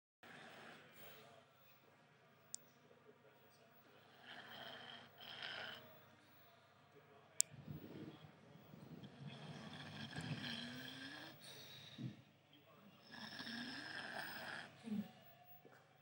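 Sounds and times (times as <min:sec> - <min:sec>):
puppy snoring: 0:04.0 - 0:05.8, 0:08.8 - 0:12.2, 0:13.0 - 0:15.1.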